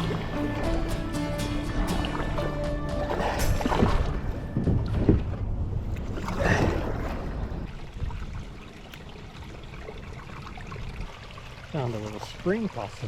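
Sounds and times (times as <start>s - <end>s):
paddle strokes splashing: 0.0s - 12.6s
wind on microphone: 1.8s - 11.3s.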